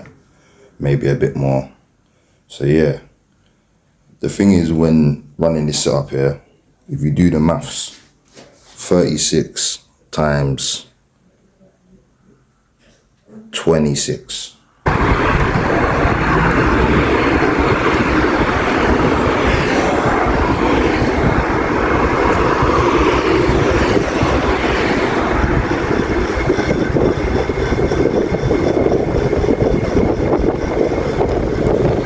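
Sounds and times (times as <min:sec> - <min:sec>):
road noise: 0:14.9 - 0:32.0
wind rushing over microphone: 0:14.9 - 0:32.0.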